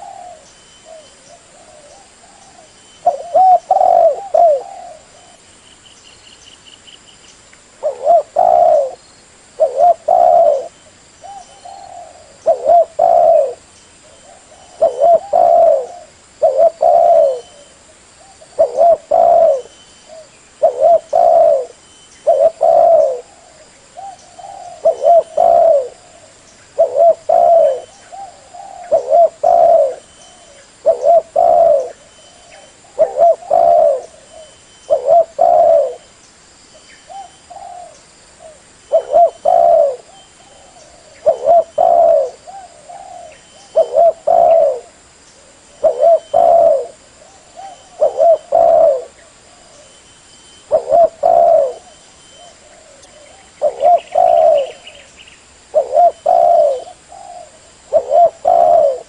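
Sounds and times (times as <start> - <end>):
dove cooing: 0.0 - 5.4, 7.8 - 9.0, 9.6 - 36.1, 37.0 - 50.0, 50.6 - 55.1, 55.7 - 59.0.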